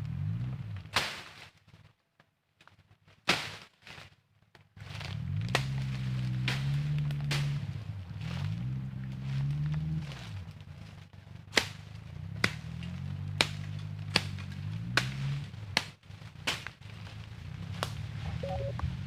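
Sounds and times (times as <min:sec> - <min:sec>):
low steady hum: 0:18.2 - 0:19.0.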